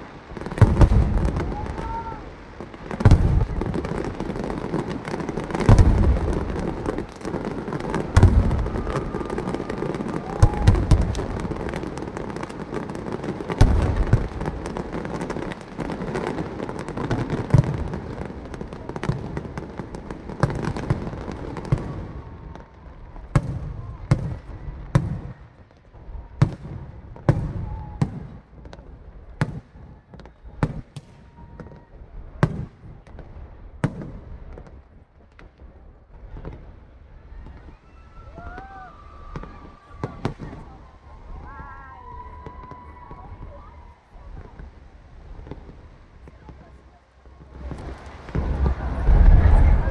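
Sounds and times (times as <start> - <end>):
fireworks crackling: 0.0 - 49.9
firework shells booming: 0.4 - 22.0, 47.5 - 49.9.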